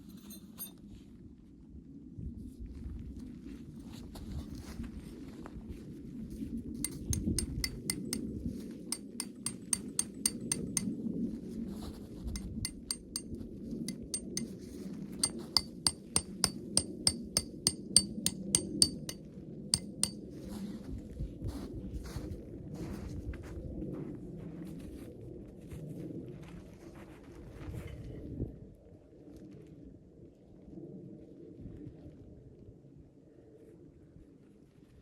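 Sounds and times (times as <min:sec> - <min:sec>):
light metallic clinks: 0:06.9 - 0:08.2, 0:09.0 - 0:10.9, 0:12.4 - 0:13.3, 0:13.9 - 0:14.5, 0:15.2 - 0:19.2, 0:19.8 - 0:20.2.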